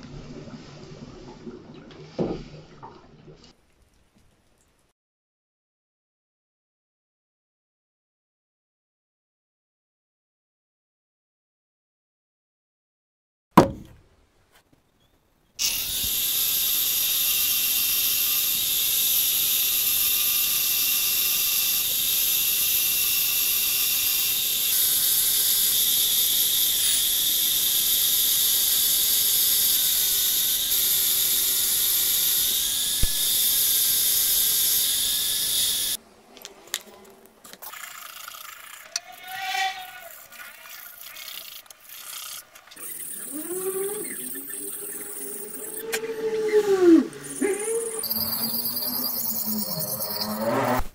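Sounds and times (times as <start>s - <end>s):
sharp knock: 13.6s - 14.0s
electric power tool whining: 15.6s - 36.9s, 37.5s - 50.9s.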